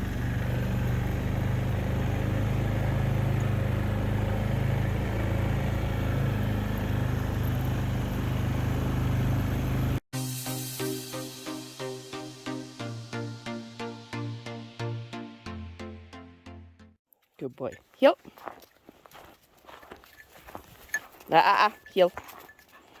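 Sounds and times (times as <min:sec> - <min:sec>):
vehicle engine humming: 0:00.0 - 0:10.0
electronic music with a beat: 0:10.2 - 0:16.9.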